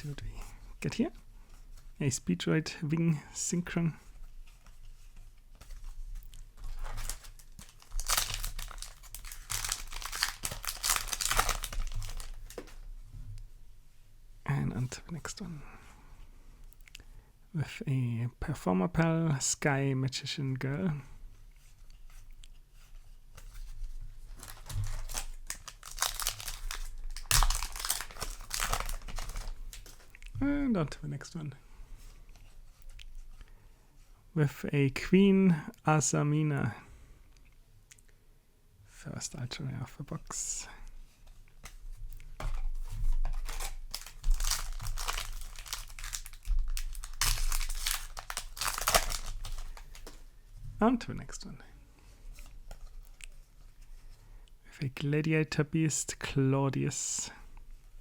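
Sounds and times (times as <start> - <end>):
foil wrapper crinkling: 6.3 - 12.8, 24.2 - 30.1, 42.4 - 50.3
foil wrapper ripping: 6.7 - 12.8, 24.3 - 30.1, 43.3 - 50.2.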